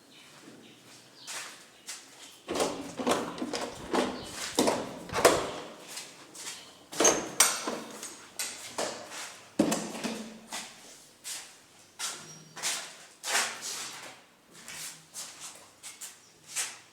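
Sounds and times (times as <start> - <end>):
knocks clatters and scrapes: 2.5 - 5.7.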